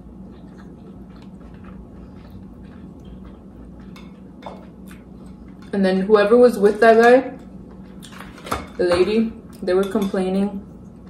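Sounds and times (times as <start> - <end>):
quiet chewing: 0.0 - 5.8
low steady room hum: 0.0 - 11.0
small clicks of eating: 0.2 - 5.8.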